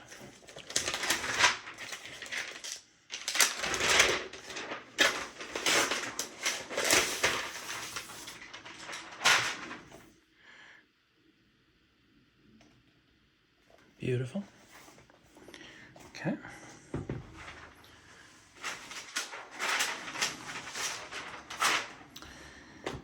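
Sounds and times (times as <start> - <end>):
packaging rustling and crinkling: 0.0 - 10.1, 17.1 - 22.2.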